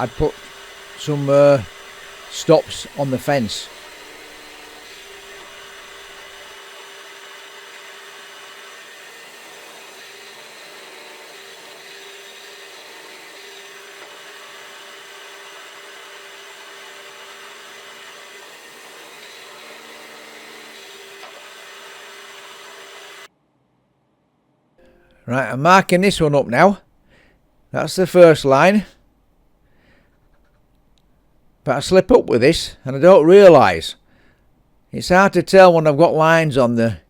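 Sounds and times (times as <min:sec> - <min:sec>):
electric motor whirring hum: 0:00.0 - 0:23.3.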